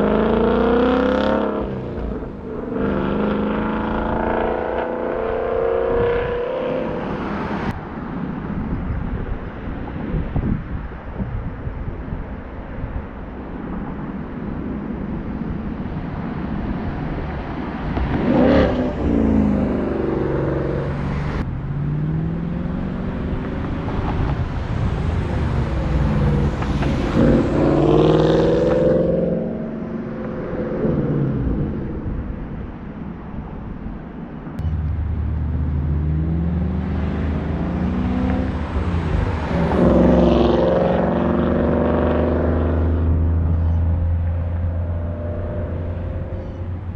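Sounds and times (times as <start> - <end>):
car engine accelerating hard: 34.6 - 46.9.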